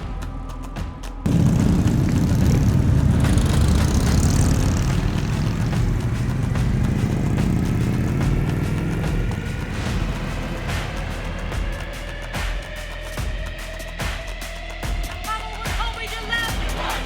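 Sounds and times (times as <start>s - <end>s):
vehicle engines rumbling: 1.3s - 10.8s.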